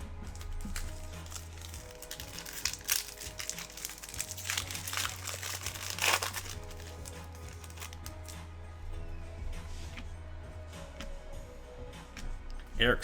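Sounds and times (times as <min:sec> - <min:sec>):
background music: 0:00.0 - 0:13.0
wrapper crinkling and tearing: 0:00.3 - 0:08.4.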